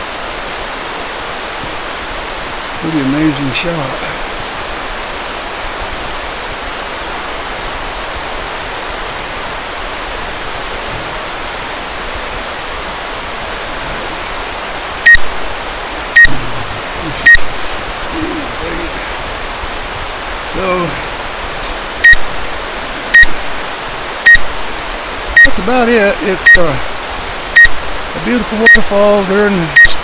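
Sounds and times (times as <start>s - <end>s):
waterfall rushing: 0.0s - 30.0s
sharp clicks: 21.6s - 22.3s.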